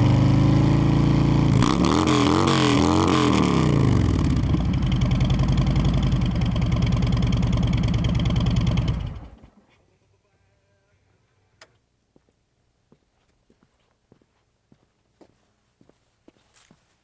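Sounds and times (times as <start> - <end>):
engine switching off: 0.0 - 9.5
motorcycle engine idling: 2.9 - 9.5.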